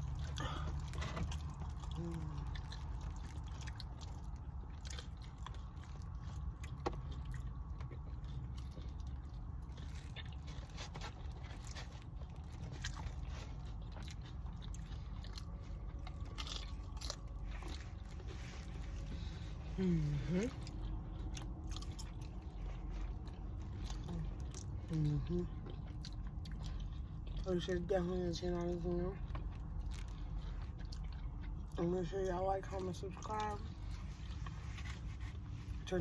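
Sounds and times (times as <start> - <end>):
chewing and biting food: 0.0 - 36.0
steady low hum: 0.0 - 36.0
small crunches: 0.1 - 19.6.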